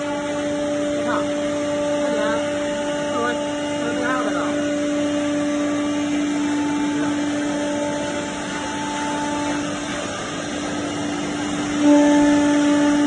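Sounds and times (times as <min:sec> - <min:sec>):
machine hum with whine: 0:00.0 - 0:13.0.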